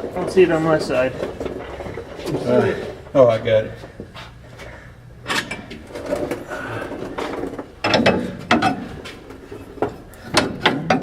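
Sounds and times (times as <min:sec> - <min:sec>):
hand tools and metal parts clinking: 0:05.2 - 0:11.0.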